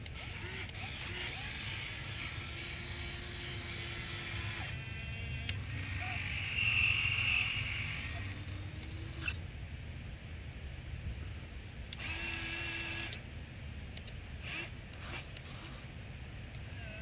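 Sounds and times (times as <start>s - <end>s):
electric motor and pump whining: 0.0s - 9.4s, 12.0s - 13.2s, 14.4s - 16.0s, 16.6s - 17.0s.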